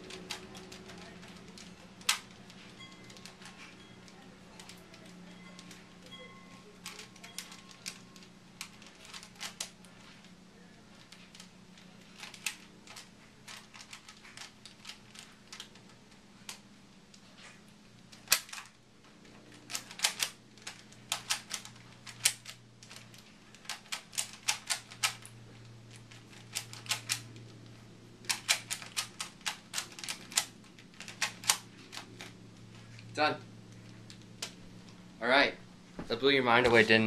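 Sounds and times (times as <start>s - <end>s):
plastic puzzle cube clicking: 6.8s - 10.1s, 11.0s - 16.6s, 18.1s - 18.7s, 19.7s - 25.3s, 26.3s - 27.3s, 28.3s - 32.3s.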